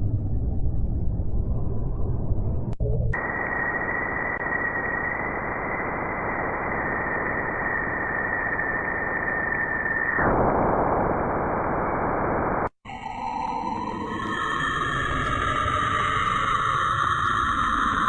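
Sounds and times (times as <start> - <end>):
eerie steady tones: 0.0 - 10.9, 12.8 - 18.0
static-like hiss: 3.2 - 12.7.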